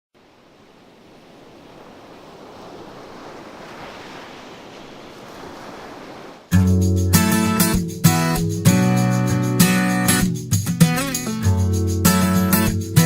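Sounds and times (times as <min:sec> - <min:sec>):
ocean waves washing on shore: 0:00.2 - 0:08.7.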